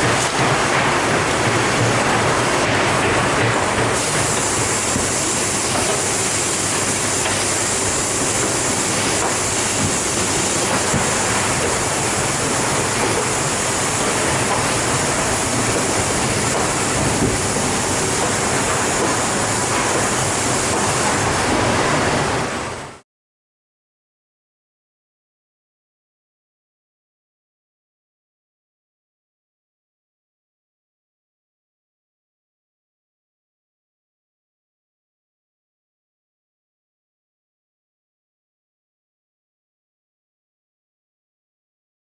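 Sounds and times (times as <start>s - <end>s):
drilling machine running: 2.4s - 21.8s.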